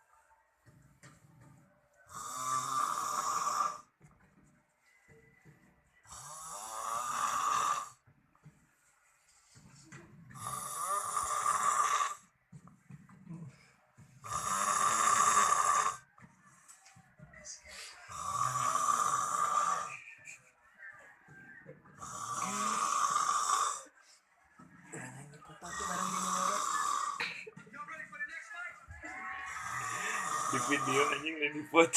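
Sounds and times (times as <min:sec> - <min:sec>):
loud snoring: 0:02.1 - 0:03.9, 0:06.1 - 0:08.0, 0:10.3 - 0:12.2, 0:14.2 - 0:16.1, 0:18.1 - 0:19.9, 0:22.0 - 0:23.9, 0:25.7 - 0:27.2, 0:29.5 - 0:31.2
quiet breathing: 0:04.8 - 0:25.1.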